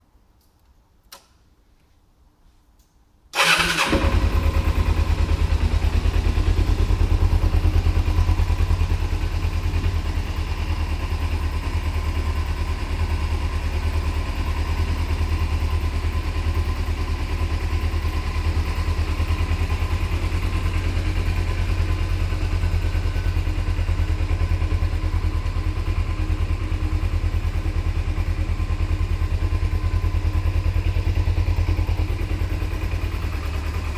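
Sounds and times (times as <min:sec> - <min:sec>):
click: 0:00.4 - 0:01.9, 0:02.8 - 0:03.0
motorcycle engine starting and idling: 0:03.3 - 0:33.9.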